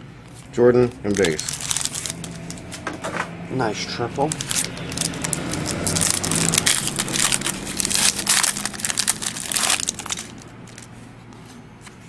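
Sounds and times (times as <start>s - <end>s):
wrapper crinkling: 0.3s - 2.8s, 4.2s - 11.0s.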